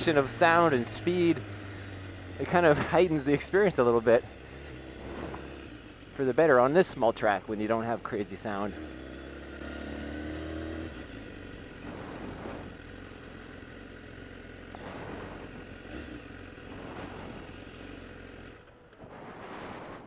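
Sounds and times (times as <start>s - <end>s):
motorcycle engine: 0.0s - 20.0s
rushing wind: 4.2s - 5.9s, 11.7s - 13.6s, 14.7s - 20.0s.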